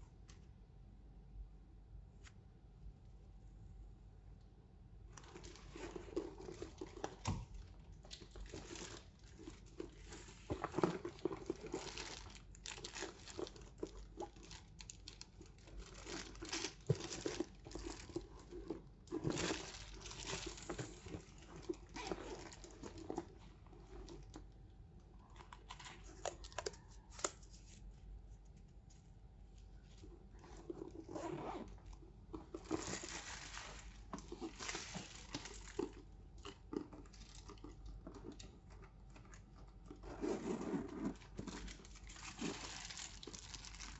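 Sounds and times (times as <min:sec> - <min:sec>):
packaging rustling and crinkling: 0:05.1 - 0:24.4, 0:29.6 - 0:43.9.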